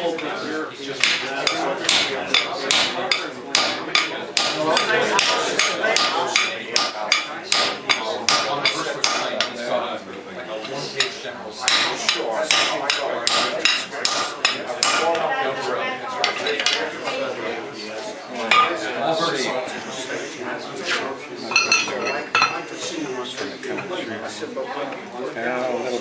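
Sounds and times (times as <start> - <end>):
hammer striking metal on anvil: 1.0 - 9.5, 11.7 - 15.0.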